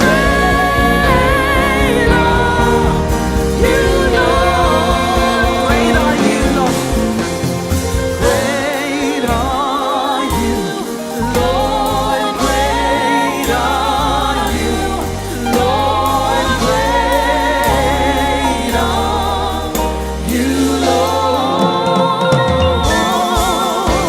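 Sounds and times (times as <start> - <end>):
band with steady bass: 0.0 - 24.0
voices singing together: 0.0 - 24.0.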